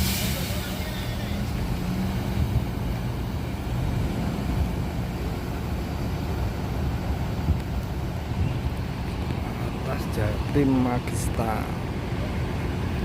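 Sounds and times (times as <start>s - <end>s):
bus diesel engine running: 0.0s - 13.0s.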